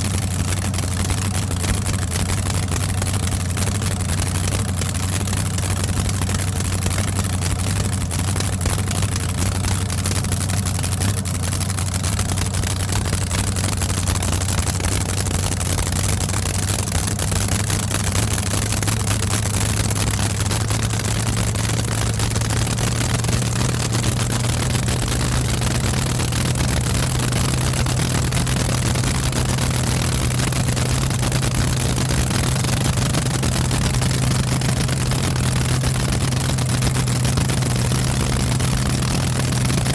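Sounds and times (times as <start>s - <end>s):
engine humming: 0.0s - 39.9s.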